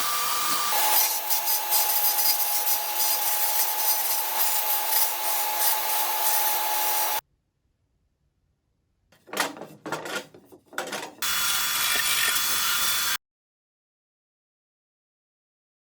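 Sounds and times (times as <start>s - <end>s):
table saw cutting wood: 0.0s - 7.2s, 11.2s - 13.2s
rubbing strokes: 1.0s - 6.6s.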